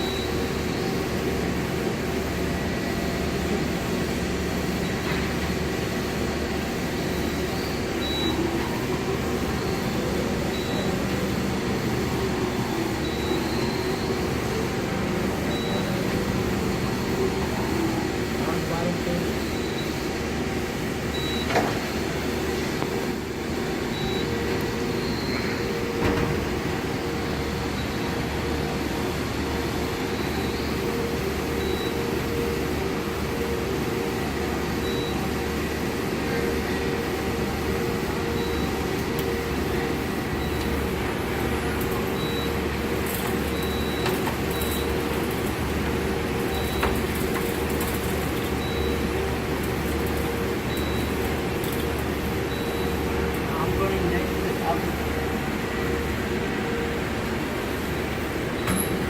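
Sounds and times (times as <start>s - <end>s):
lathe humming: 0.0s - 21.2s.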